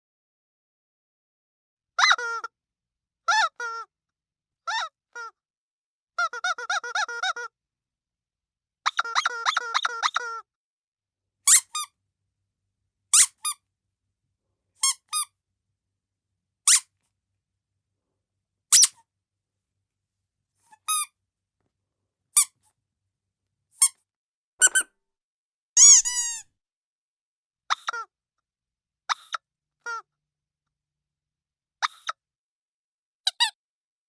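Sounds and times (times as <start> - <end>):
squeaky dog toy squeaking: 2.0 - 2.5, 3.3 - 3.9, 4.7 - 5.4, 6.2 - 7.5, 8.9 - 10.4, 11.5 - 11.9, 13.1 - 13.6, 14.8 - 15.3, 16.7 - 17.0, 18.7 - 19.0, 20.7 - 21.2, 24.6 - 24.9, 25.8 - 26.5, 27.7 - 28.1, 29.1 - 30.0, 33.3 - 33.6.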